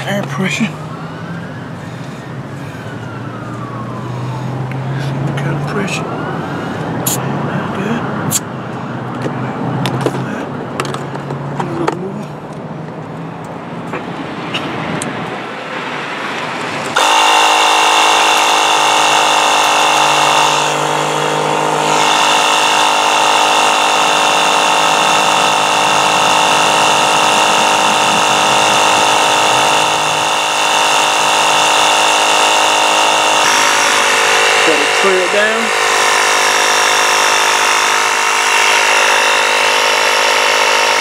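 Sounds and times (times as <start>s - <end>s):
electric tire inflator running: 16.3s - 41.0s.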